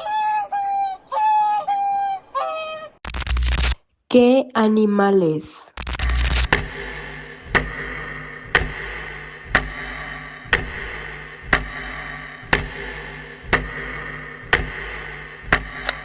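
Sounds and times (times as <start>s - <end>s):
clock ticking: 6.4s - 16.0s.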